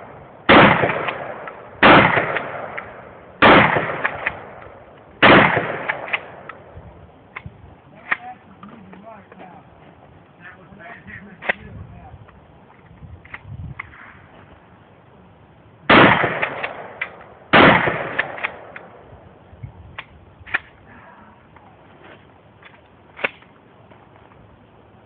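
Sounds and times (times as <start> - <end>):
faint sharp cracks: 0.0 - 6.7, 15.9 - 19.0, 21.5 - 24.4
shotgun blasts with echo: 0.0 - 6.7, 15.9 - 19.0.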